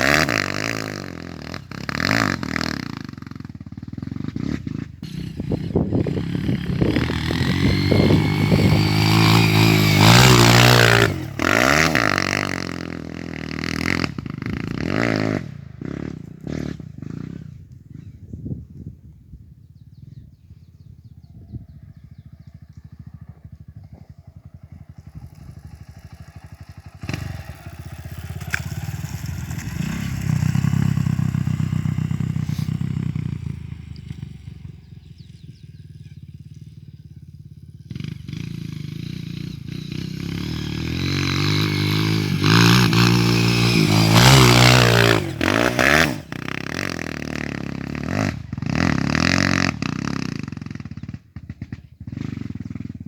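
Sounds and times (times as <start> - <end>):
motorcycle engine revving: 0.0 - 53.0.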